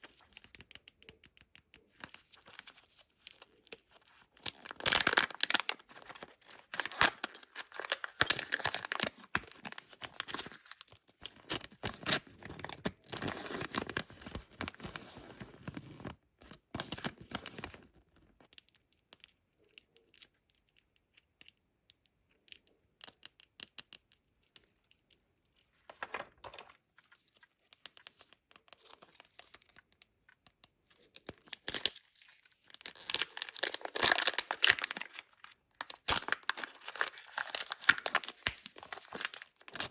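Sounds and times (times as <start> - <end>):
small clicks and taps: 0.0 - 4.5, 18.1 - 31.5
wrappers torn and crinkled: 4.4 - 10.8, 32.7 - 39.9.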